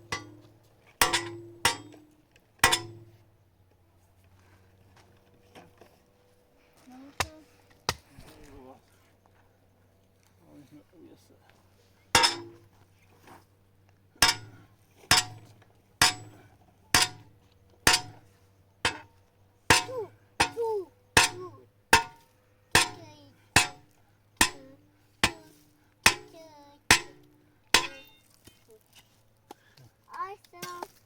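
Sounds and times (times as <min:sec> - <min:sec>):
hammer striking metal: 0:00.0 - 0:02.0, 0:02.6 - 0:03.2, 0:12.2 - 0:12.6, 0:14.2 - 0:17.3, 0:17.9 - 0:18.2, 0:18.9 - 0:19.1, 0:19.7 - 0:22.2, 0:22.8 - 0:28.2.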